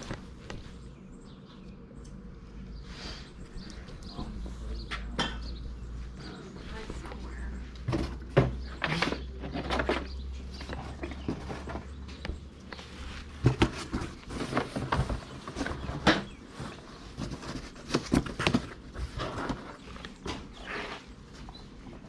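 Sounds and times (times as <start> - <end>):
rustling: 6.0 - 22.0.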